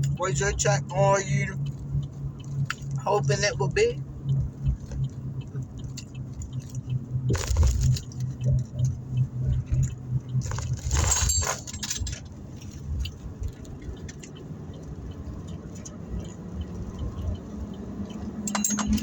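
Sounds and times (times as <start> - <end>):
low hum inside car: 0.0 - 19.0
food wrapping rustling: 10.4 - 11.6.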